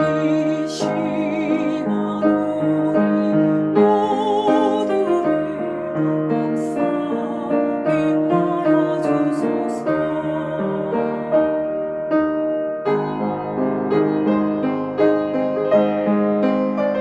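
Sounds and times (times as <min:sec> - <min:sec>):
woman singing a hymn with vibrato: 0:00.0 - 0:11.8
piano accompaniment: 0:00.0 - 0:17.0.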